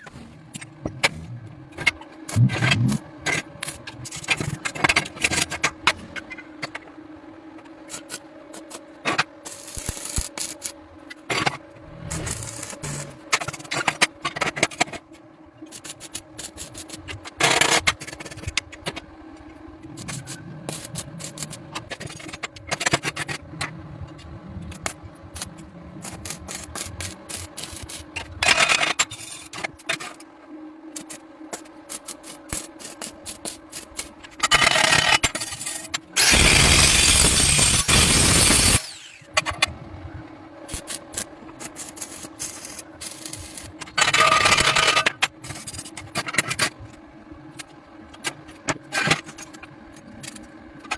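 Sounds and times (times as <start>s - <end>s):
steady hum: 0.0s - 50.9s
loud hissing noise: 36.2s - 39.2s.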